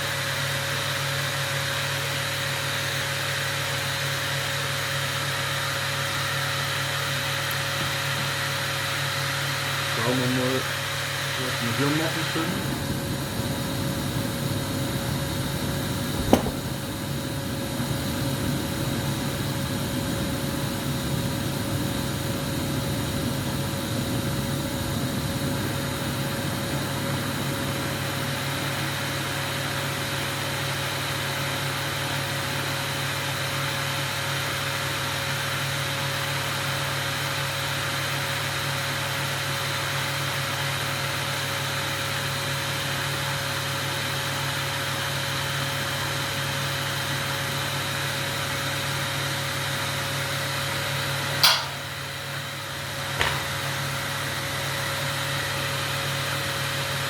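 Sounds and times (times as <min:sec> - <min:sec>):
machine hum with hiss: 0:00.0 - 0:57.0
sharp click: 0:51.4 - 0:52.0.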